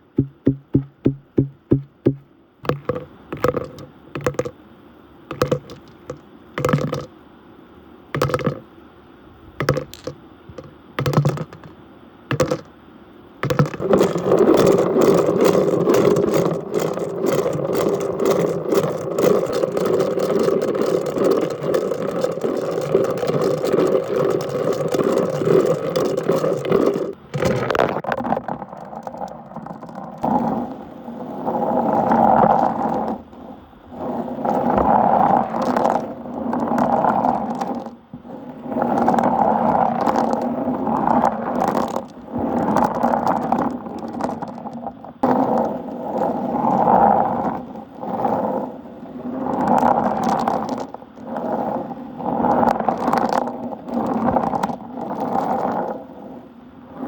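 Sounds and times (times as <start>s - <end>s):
glass marbles clattering: 2.7s - 4.6s, 5.3s - 7.1s, 8.2s - 8.6s, 9.6s - 12.7s, 13.4s - 30.3s.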